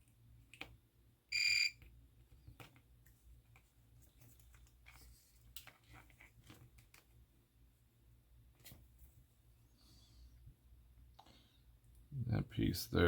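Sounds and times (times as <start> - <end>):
multimeter beep: 1.3 - 1.8.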